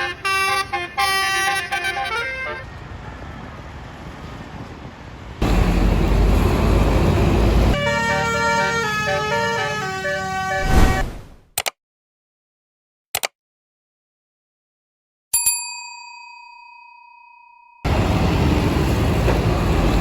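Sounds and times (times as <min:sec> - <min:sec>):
bus horn playing a tune: 0:00.0 - 0:02.8, 0:07.7 - 0:10.7
traffic noise: 0:00.0 - 0:11.3, 0:17.9 - 0:20.0
loud rumble: 0:05.4 - 0:07.8.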